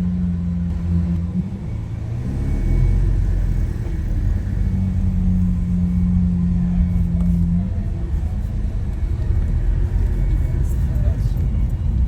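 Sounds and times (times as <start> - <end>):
car engine low drone: 0.0 - 12.0.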